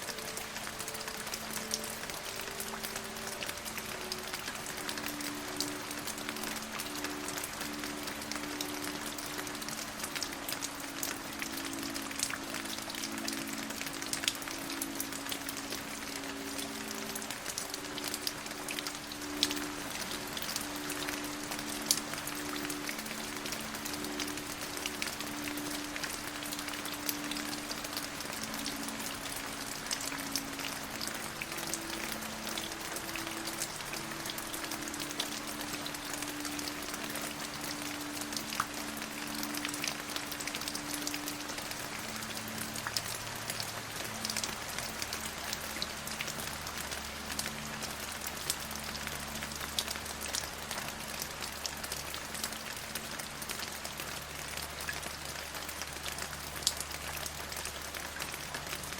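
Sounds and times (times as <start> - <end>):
steady rain falling: 0.0 - 58.9.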